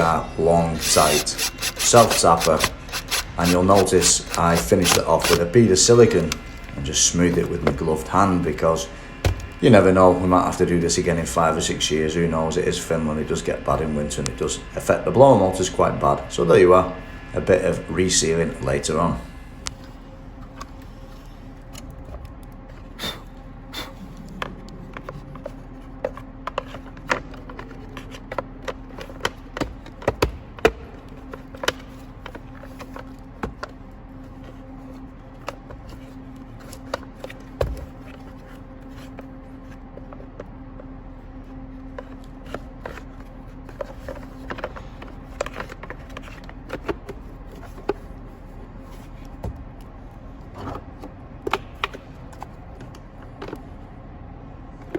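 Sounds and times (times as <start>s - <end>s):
faint steady hum: 0.0s - 54.9s
plastic parts clicking and knocking: 0.8s - 5.4s, 24.3s - 33.8s, 42.0s - 48.1s.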